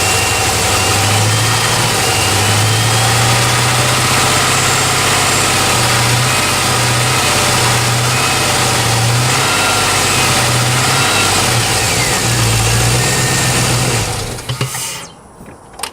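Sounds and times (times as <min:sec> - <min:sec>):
car engine idling with knock: 0:00.0 - 0:15.6.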